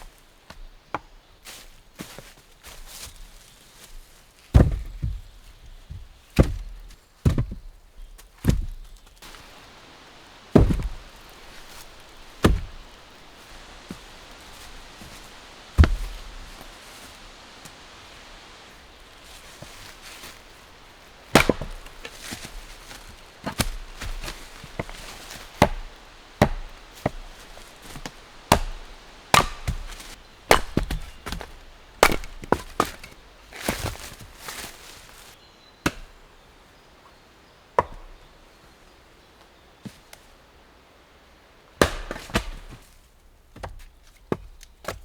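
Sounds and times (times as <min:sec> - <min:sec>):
wood being chopped: 0:04.5 - 0:35.2, 0:35.8 - 0:36.2, 0:37.8 - 0:38.2, 0:41.8 - 0:42.9.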